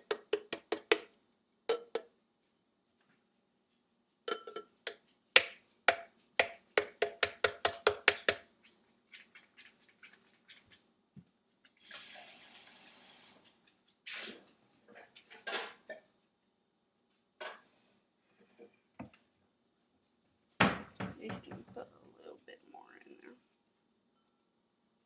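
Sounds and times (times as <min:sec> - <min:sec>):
hard object tapping container: 0:00.0 - 0:01.1
short hiss: 0:11.8 - 0:13.4.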